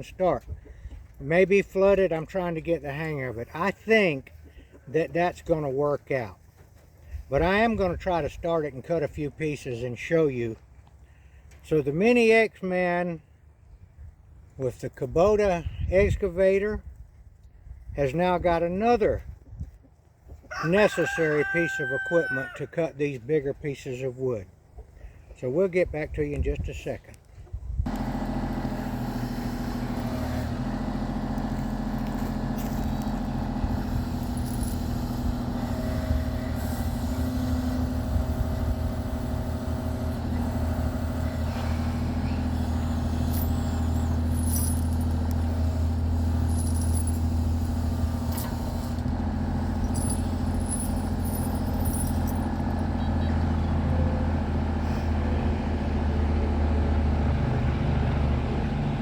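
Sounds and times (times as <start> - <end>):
engine running steadily: 27.8 - 59.0.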